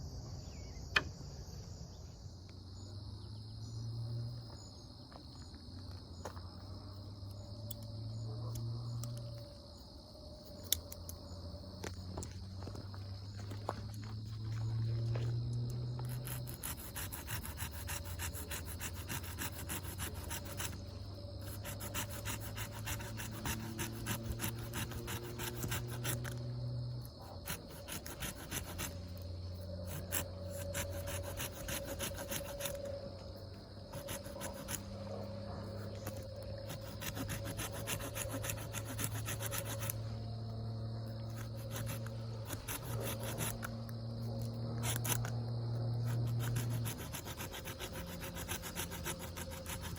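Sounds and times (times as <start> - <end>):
small saw cutting wood: 15.0 - 40.2, 41.0 - 49.9.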